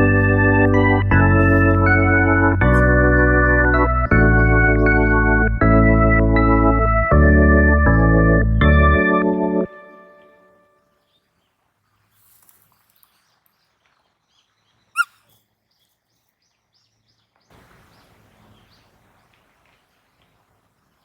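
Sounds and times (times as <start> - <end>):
rustling: 0.0 - 3.0, 12.0 - 13.2
faint outdoor sounds: 9.7 - 21.0
high-pitched animal call: 15.0 - 15.3.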